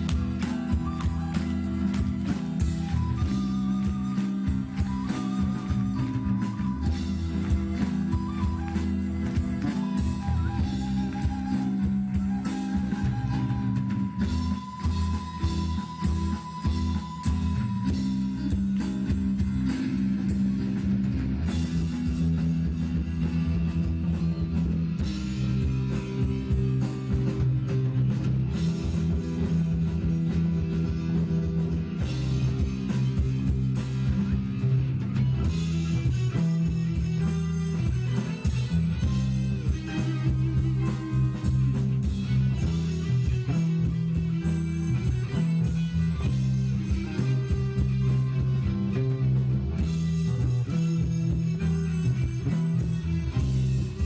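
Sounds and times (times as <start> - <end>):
bass guitar: 0.0 - 54.0
guitars: 0.0 - 54.0
live rock band playing: 0.0 - 54.0.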